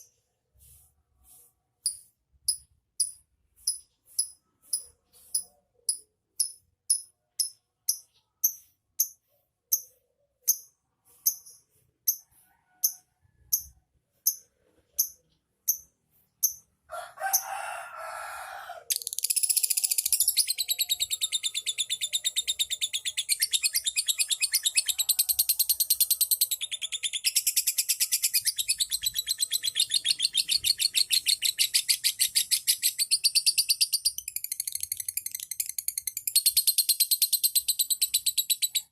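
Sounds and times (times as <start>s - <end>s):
lovebird chirping: 18.9s - 38.9s.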